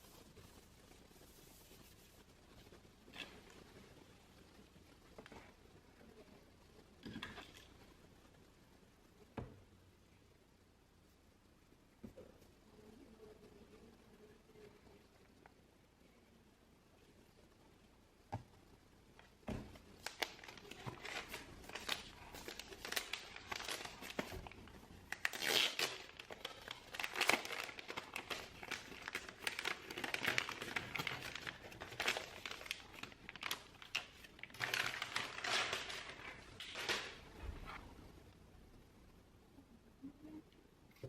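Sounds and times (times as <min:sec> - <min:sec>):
packaging crinkling: 0:19.9 - 0:37.3.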